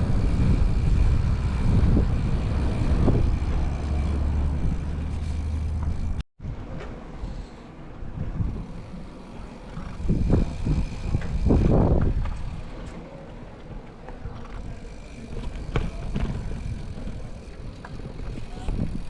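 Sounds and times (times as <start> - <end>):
wind buffeting microphone: 0.0 - 5.0, 7.9 - 12.9, 14.2 - 19.0.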